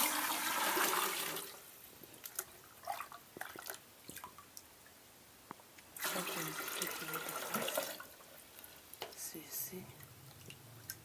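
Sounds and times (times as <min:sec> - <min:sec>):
water running into a jug: 0:00.0 - 0:01.6, 0:06.0 - 0:08.2
water drips: 0:09.9 - 0:11.0.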